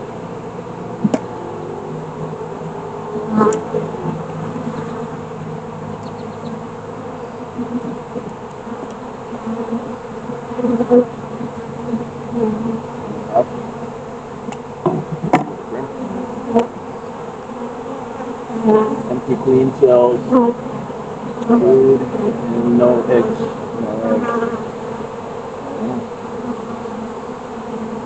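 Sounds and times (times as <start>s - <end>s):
honeybees buzzing: 0.0s - 28.0s
sharp knocks: 1.0s - 1.4s.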